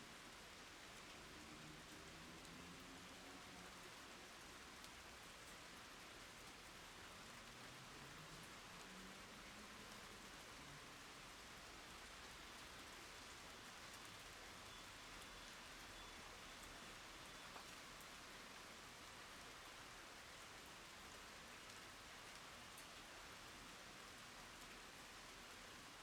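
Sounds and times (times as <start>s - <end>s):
rain hiss on wooden boards: 0.0s - 26.0s.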